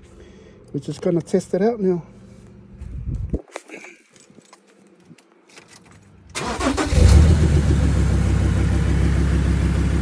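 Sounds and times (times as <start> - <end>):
car engine cranking and idling: 6.3 - 10.0.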